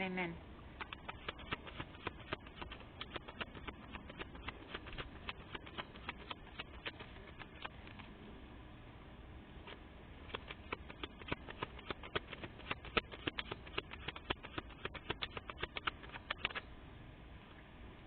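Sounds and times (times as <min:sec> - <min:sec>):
rapid sharp clicks: 0:00.8 - 0:08.2, 0:09.7 - 0:16.7.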